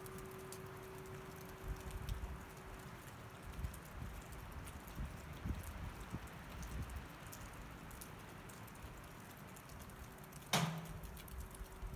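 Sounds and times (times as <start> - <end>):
wind and falling snow hiss: 0.0 - 11.9
wind gusts rumbling on microphone: 3.4 - 7.1.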